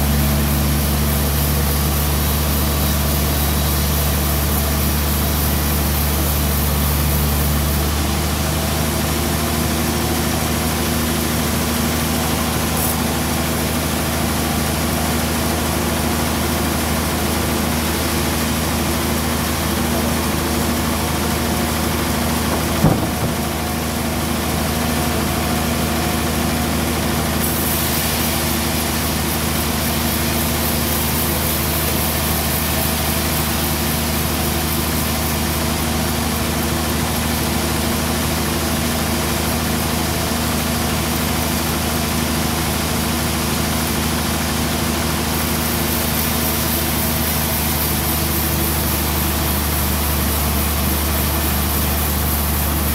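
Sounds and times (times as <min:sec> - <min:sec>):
sawmill machinery humming: 0:00.0 - 0:52.9
sharp knock: 0:22.5 - 0:23.7.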